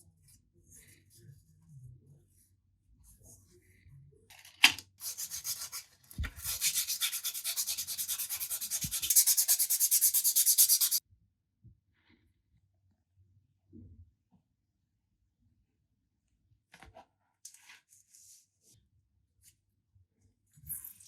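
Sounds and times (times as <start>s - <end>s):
hands rubbing on saber: 5.0s - 11.0s.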